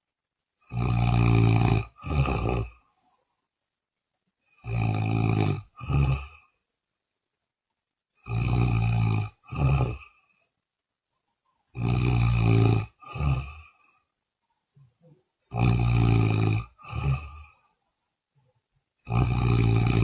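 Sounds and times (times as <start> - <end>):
woman snoring loudly: 0.6 - 2.8, 4.5 - 6.5, 8.2 - 10.2, 11.7 - 13.9, 15.5 - 17.6, 19.0 - 20.0.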